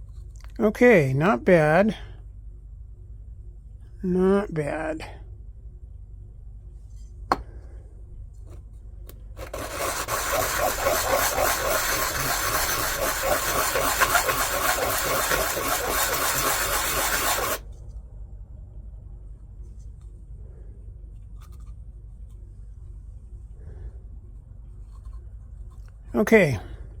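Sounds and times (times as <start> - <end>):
plastic sanding on sandpaper: 9.4 - 17.6.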